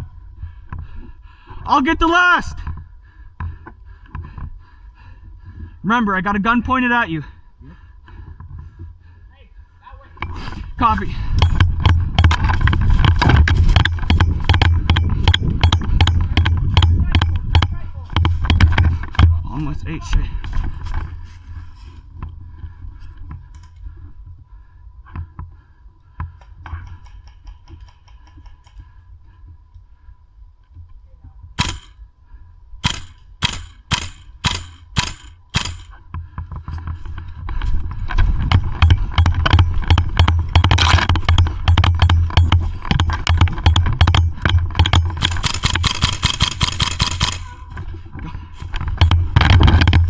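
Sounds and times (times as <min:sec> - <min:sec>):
airsoft gun shots: 0:31.6 - 0:32.0, 0:32.8 - 0:36.0, 0:39.2 - 0:47.6.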